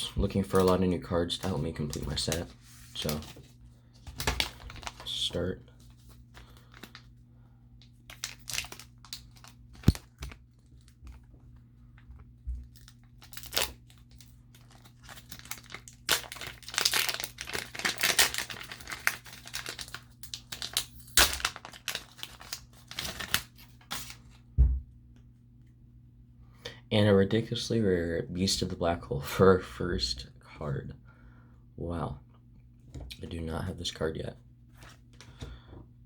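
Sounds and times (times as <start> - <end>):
wrapper tearing and crinkling: 4.1 - 5.3, 8.0 - 11.0, 12.7 - 24.2.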